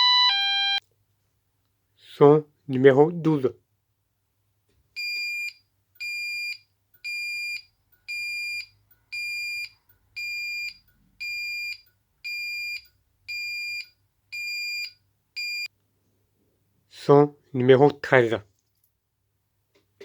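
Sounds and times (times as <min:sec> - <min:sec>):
fire alarm beeping: 0:00.0 - 0:00.8, 0:05.0 - 0:15.7.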